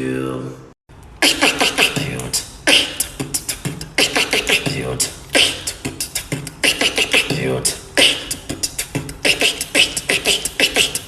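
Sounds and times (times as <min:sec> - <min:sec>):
beatboxing drum strokes: 0:01.2 - 0:11.0.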